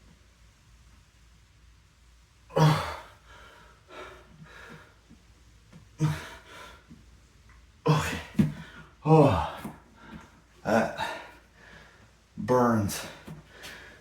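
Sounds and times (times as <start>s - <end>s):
man exhaling hard: 2.5s - 3.1s, 7.9s - 11.4s
heavy breathing: 2.5s - 5.1s, 6.0s - 7.0s, 7.9s - 12.3s, 12.9s - 14.0s
loud voiced sigh: 9.0s - 9.8s, 10.6s - 11.3s.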